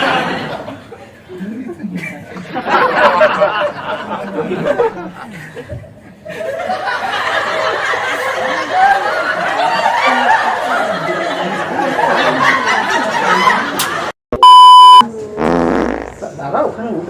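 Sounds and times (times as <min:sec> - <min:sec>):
people laughing and giggling: 0:00.0 - 0:14.1
high beep: 0:14.4 - 0:15.0.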